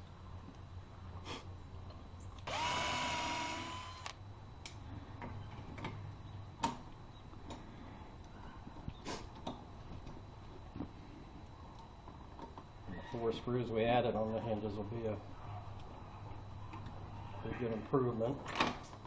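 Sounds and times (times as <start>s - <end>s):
power drill whine: 2.4s - 4.2s.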